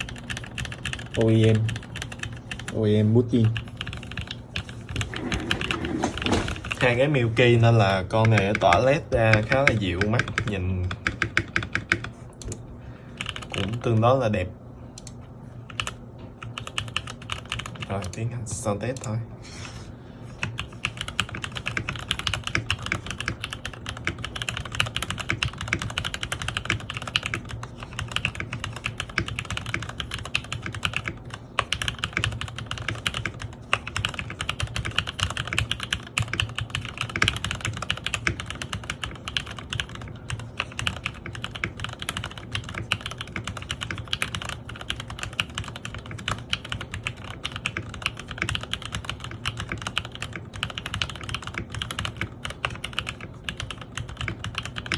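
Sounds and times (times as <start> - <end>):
mechanical keyboard keystrokes clacking: 20.4 - 54.9.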